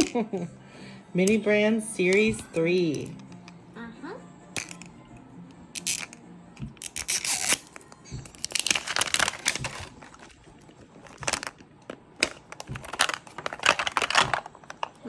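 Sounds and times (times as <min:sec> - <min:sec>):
plastic wrapper tearing and crackling: 0:06.8 - 0:15.0.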